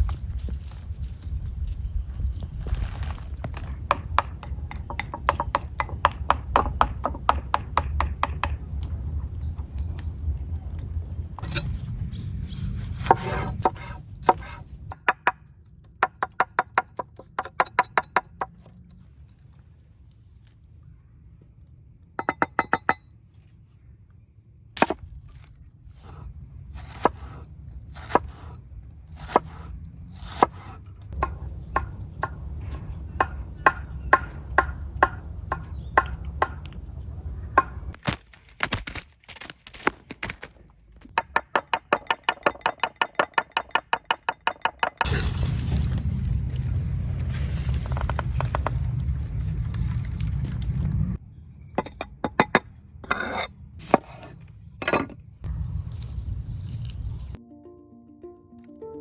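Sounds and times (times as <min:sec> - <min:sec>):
knife chopping on wooden board: 0:30.3 - 0:36.6.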